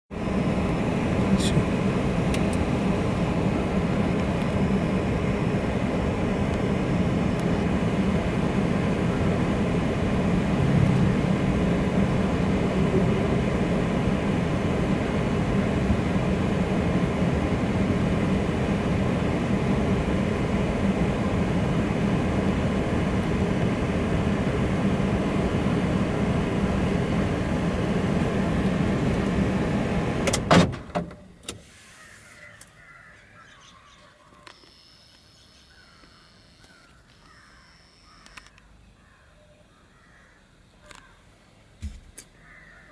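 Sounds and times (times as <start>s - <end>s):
steady mechanical hum: 0.1s - 42.9s
sharp clicks: 38.2s - 38.7s.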